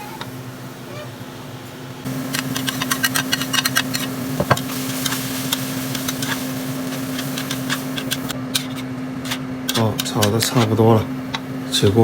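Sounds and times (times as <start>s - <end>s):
steady low hum: 0.4s - 12.0s
metal spatula scraping wok: 2.1s - 11.3s.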